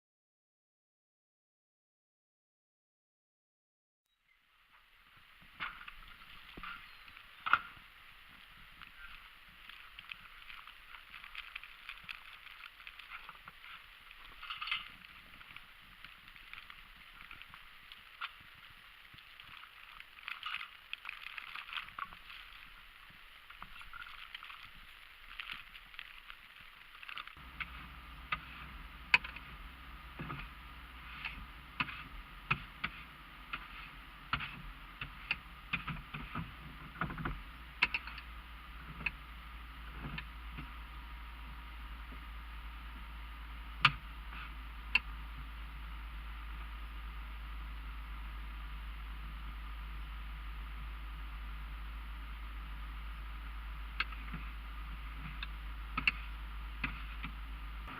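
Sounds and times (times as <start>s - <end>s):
steady low drone: 27.4s - 57.9s.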